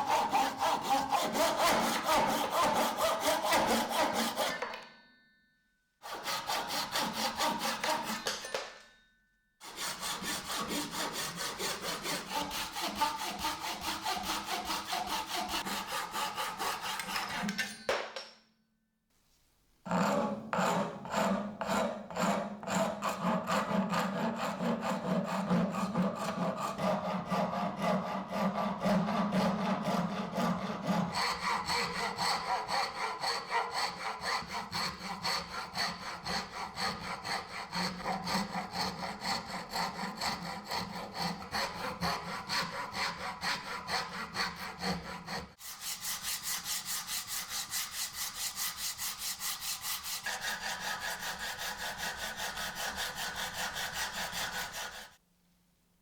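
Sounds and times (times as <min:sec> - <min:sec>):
hand sawing wood: 0:00.0 - 0:04.8, 0:06.0 - 0:08.5, 0:09.6 - 0:17.6, 0:19.9 - 0:55.2.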